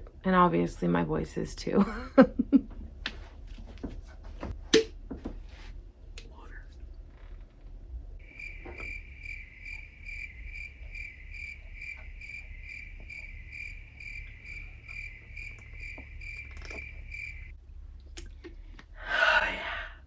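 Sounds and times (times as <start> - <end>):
cricket chirping: 8.2 - 17.5.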